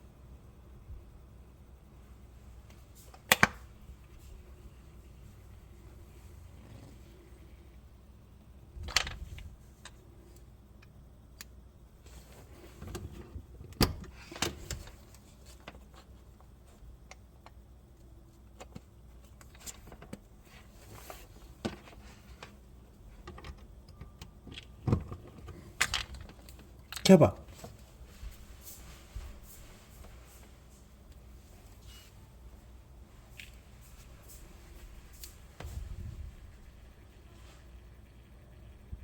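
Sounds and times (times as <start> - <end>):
low steady hum: 0.0 - 39.0
parts clicking and knocking: 18.5 - 27.8.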